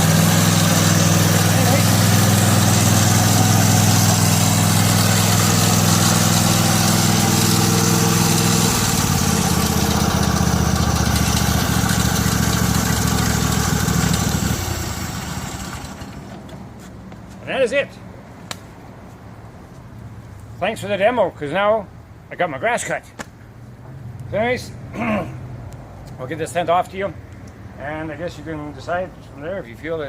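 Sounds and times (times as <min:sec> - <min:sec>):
lawn tractor engine running: 0:00.0 - 0:16.6.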